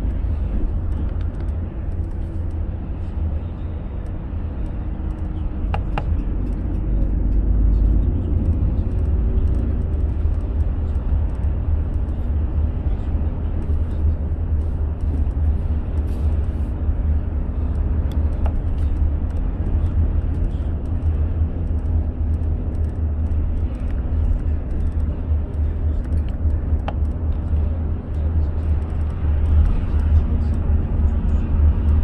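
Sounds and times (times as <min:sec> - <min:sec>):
car road and engine rumble: 0:00.0 - 0:32.0.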